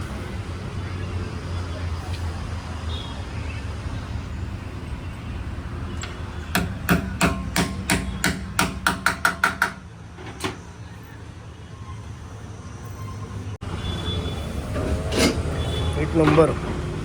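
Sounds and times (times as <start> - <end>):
hammer striking metal: 6.5 - 9.9.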